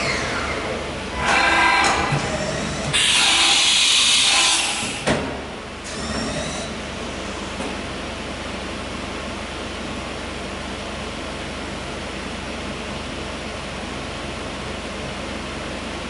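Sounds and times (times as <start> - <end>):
steady mechanical hum: 0.0 - 16.0
loud machine hiss: 2.9 - 5.1.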